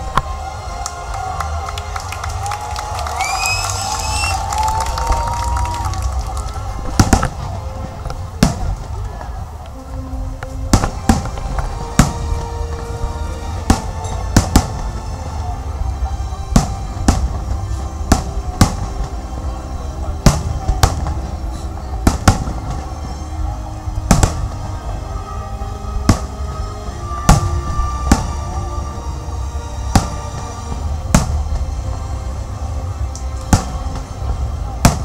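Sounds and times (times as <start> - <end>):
music: 0.0 - 35.0
fireworks bangs: 1.9 - 9.7, 10.6 - 15.6, 16.4 - 25.1, 25.9 - 26.6, 27.2 - 29.2, 29.9 - 31.9, 33.3 - 35.0.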